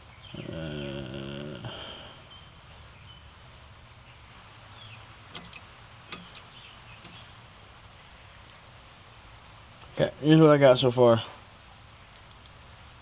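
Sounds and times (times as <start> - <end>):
low steady hum: 0.0 - 13.0
light sharp clicks and taps: 5.3 - 7.3, 12.1 - 12.6.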